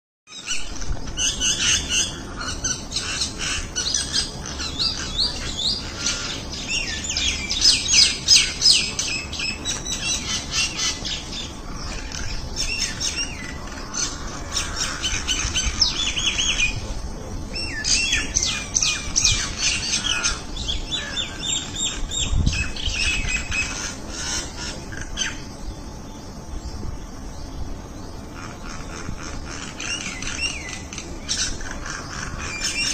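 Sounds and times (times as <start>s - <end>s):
flock of small birds chirping: 0.3s - 32.9s.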